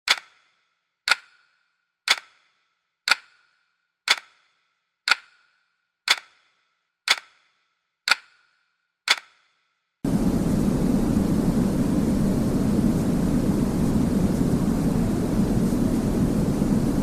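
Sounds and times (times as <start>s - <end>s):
clock-like ticking: 0.0s - 0.4s, 1.1s - 1.5s, 2.1s - 2.4s, 3.1s - 3.5s, 4.1s - 4.5s, 5.1s - 5.5s, 6.1s - 7.5s, 8.1s - 8.5s, 9.1s - 9.4s
white noise: 10.1s - 17.0s.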